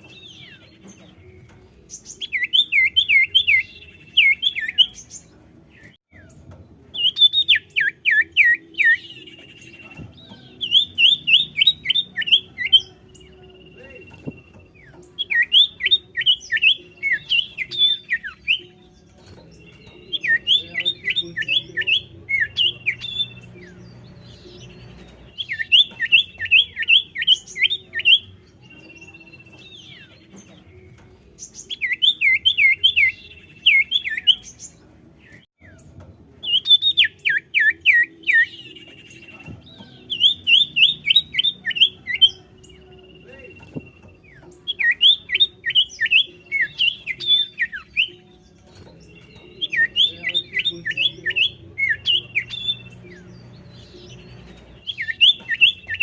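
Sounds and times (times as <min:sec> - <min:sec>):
bird singing sweeping chirps: 0:00.0 - 0:56.0.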